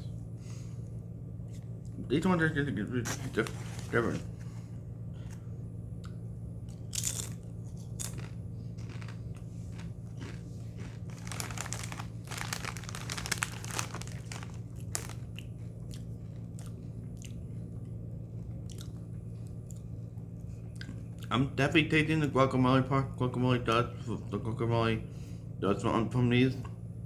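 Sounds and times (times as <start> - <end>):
person crunching tortilla chips: 3.1 - 4.4, 6.7 - 17.4.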